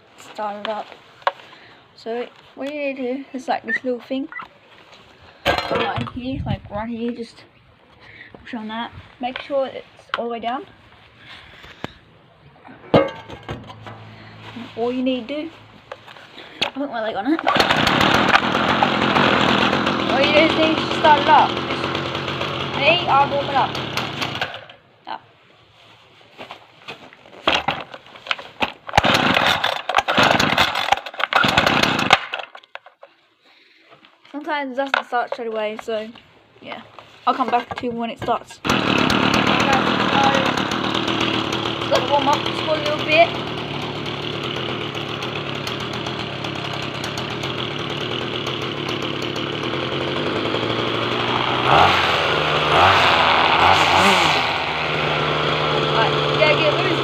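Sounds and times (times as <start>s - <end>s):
string trimmer engine sputtering: 13.1s - 24.8s, 28.9s - 32.3s, 38.6s - 57.0s
starter cord tugs: 17.4s - 24.8s, 27.5s - 33.1s, 38.6s - 57.0s.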